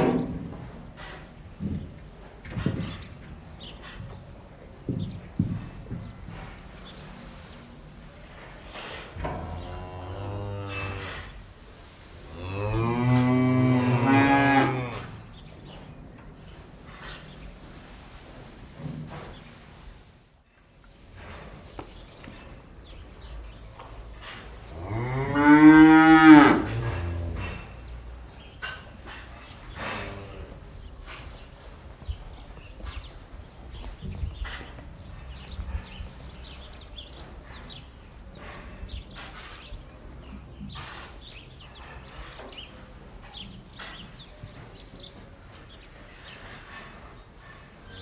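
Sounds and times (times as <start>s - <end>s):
faint barn background: 0.0s - 48.0s
small birds chirping: 1.6s - 7.7s, 21.0s - 25.3s, 26.6s - 48.0s
cow mooing: 9.2s - 11.4s, 12.3s - 15.3s, 24.7s - 27.8s.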